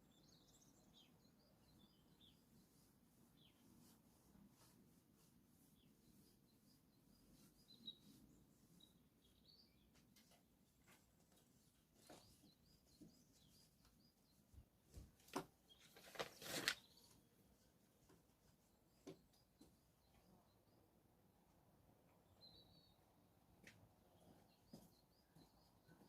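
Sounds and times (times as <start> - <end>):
faint bird chirps: 5.6 - 11.0, 11.6 - 15.0.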